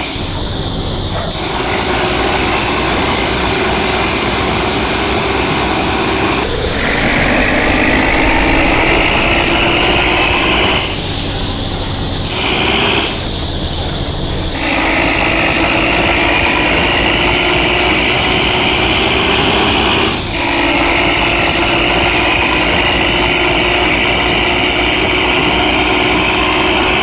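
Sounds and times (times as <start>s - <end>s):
truck diesel engine under load: 0.0s - 27.0s
high whine: 6.4s - 27.0s.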